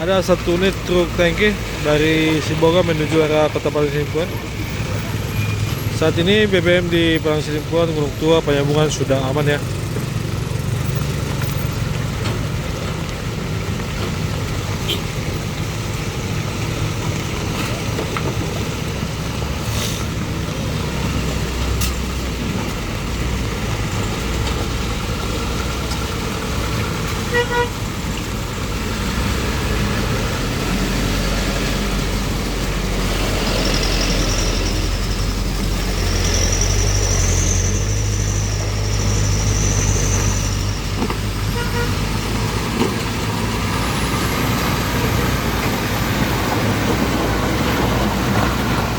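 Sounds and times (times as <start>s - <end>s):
truck engines running: 0.0s - 48.9s
short horn toot: 41.5s - 42.0s.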